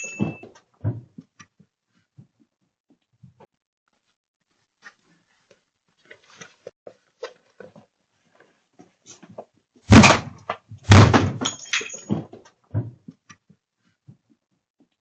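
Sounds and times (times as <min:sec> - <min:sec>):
metallic ring: 0:00.0 - 0:00.5, 0:11.4 - 0:12.3
loud bangs: 0:09.9 - 0:11.6.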